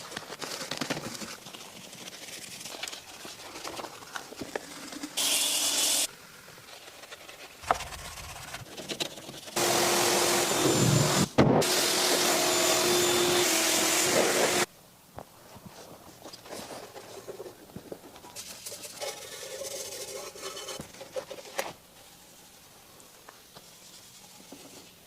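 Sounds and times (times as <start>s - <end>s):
vacuum-like motor with rushing air: 9.6s - 14.7s.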